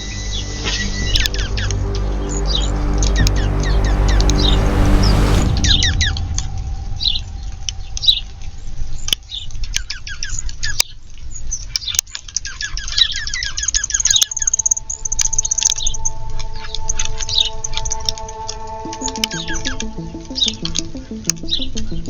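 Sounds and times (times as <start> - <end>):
music: 0.0 - 9.1, 14.4 - 22.0
steady musical tones: 0.0 - 10.0, 13.8 - 22.0.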